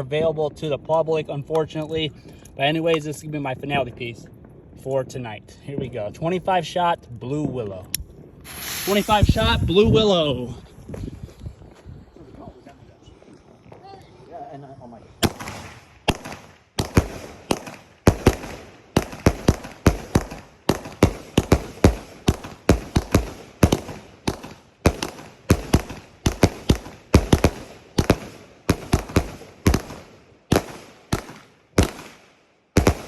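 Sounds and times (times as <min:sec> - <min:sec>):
firework cake shots: 0:08.4 - 0:09.9, 0:15.2 - 0:32.2, 0:32.8 - 0:33.0.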